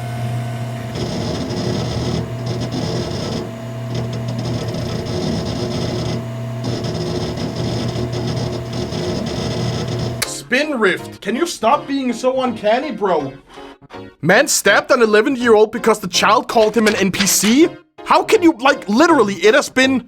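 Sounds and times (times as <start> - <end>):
machine humming and grinding: 0.0 - 10.3.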